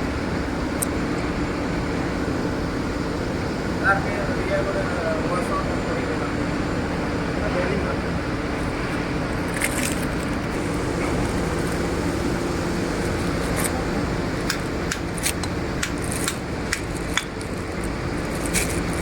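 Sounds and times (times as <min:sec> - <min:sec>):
industrial machinery drone: 0:00.0 - 0:19.0.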